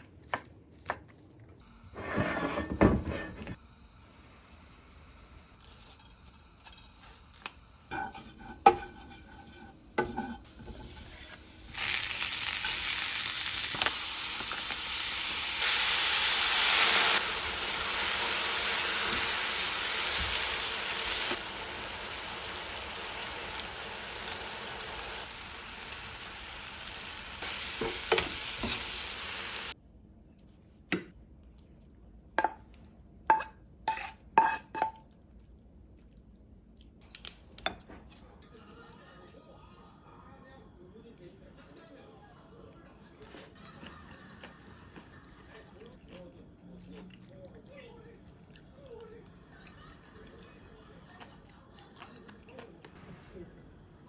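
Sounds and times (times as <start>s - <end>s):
food sizzling in frying pan: 2.0s - 29.8s.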